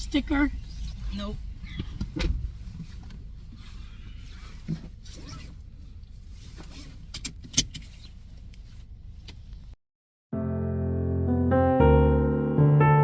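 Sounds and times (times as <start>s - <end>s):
car interior rumble: 0.0s - 9.8s.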